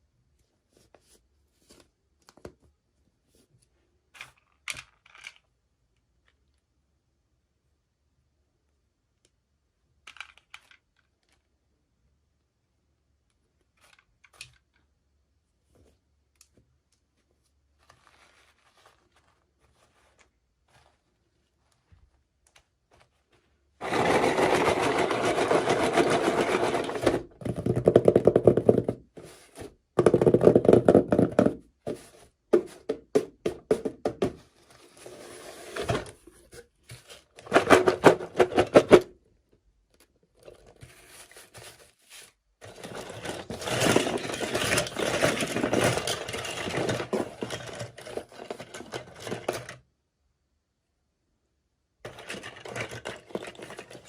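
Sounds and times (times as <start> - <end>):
toy packaging scraping and rustling: 17.6 - 22.2, 22.9 - 29.8, 31.4 - 39.1, 40.4 - 49.8, 52.1 - 54.0.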